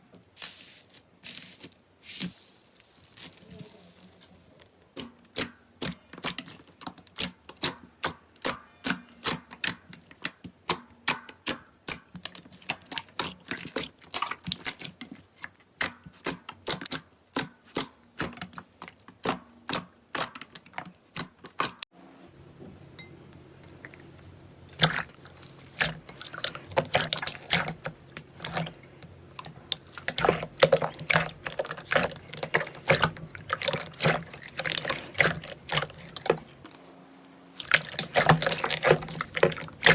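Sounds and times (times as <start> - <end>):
slime squishing and popping: 24.7 - 36.5, 37.6 - 39.9.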